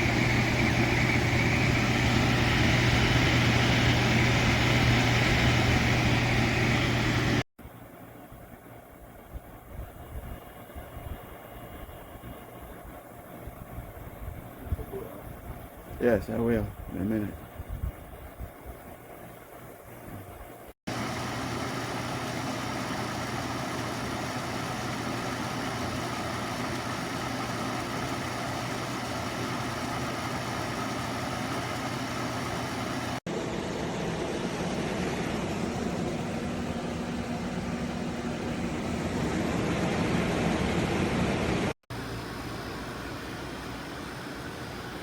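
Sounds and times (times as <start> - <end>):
air conditioner fan rushing: 0.0 - 45.0.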